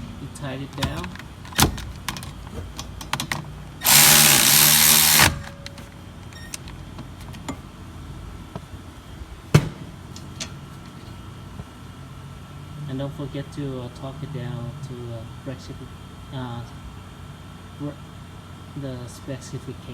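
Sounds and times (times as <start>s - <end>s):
cordless power tool driving bolt: 0.8s - 6.8s
sharp metallic click: 3.1s - 6.7s.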